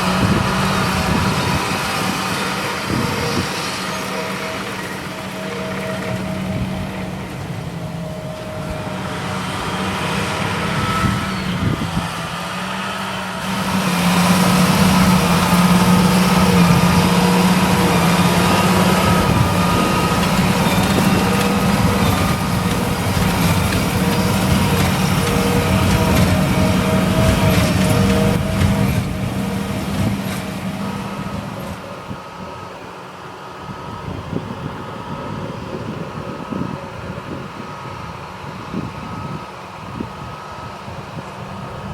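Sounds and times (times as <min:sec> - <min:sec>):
baler working: 0:00.0 - 0:32.2
tractor engine under load: 0:00.0 - 0:41.9.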